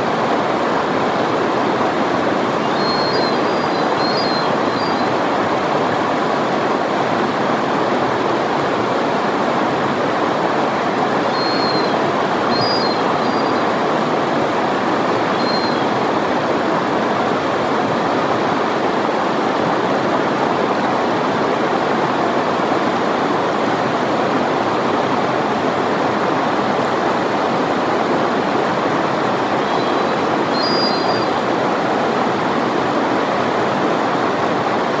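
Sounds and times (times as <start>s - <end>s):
river water rushing: 0.0s - 35.0s
faint high chirps: 2.6s - 5.1s, 11.3s - 13.6s, 15.3s - 15.9s, 29.6s - 31.3s.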